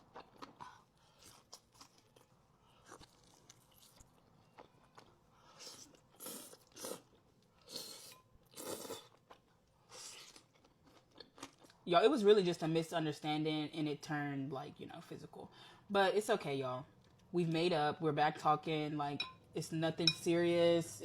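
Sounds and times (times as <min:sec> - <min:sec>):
crunching and chewing: 0:00.0 - 0:11.8.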